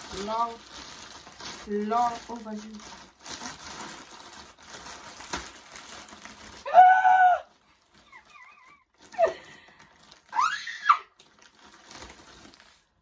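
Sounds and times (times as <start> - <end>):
plastic packaging crinkling: 0.0 - 13.0
falling cry: 6.6 - 7.5.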